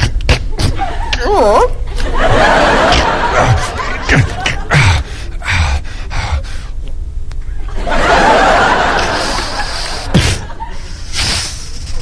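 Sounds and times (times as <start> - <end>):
studio audience laughing: 1.9 - 5.0, 7.6 - 11.1.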